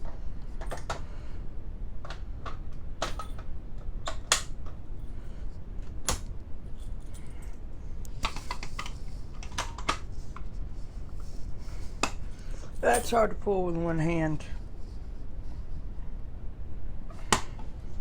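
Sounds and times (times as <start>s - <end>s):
fire alarm pull station clicks: 2.1s - 4.6s.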